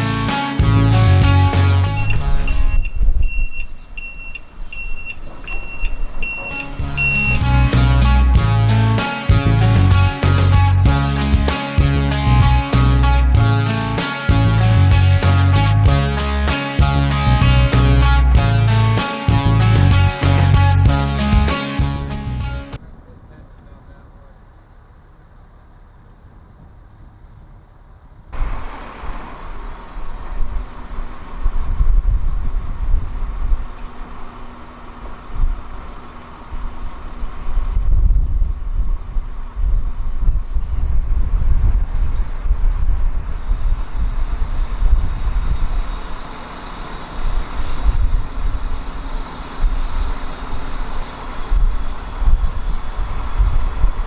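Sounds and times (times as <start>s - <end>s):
boat engine drone: 0.0s - 40.6s, 42.2s - 54.0s
wind buffeting microphone: 2.0s - 8.8s, 28.4s - 54.0s.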